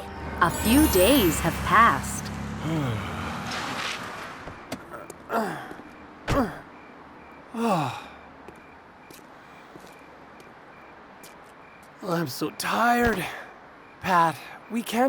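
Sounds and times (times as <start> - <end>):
cartoon character sighing: 2.6 - 3.2.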